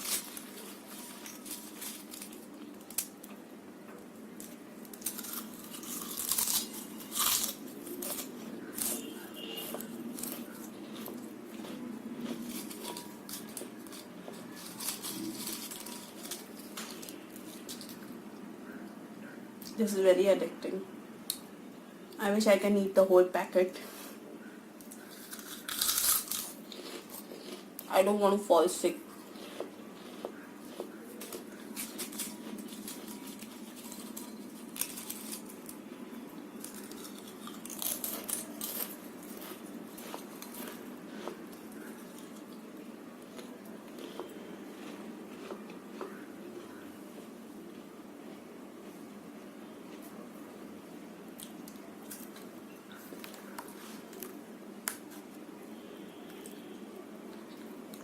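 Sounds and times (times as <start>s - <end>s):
crunching potato chips: 0.0s - 3.3s, 4.4s - 18.2s, 24.9s - 46.7s
steady background hum: 0.0s - 58.0s.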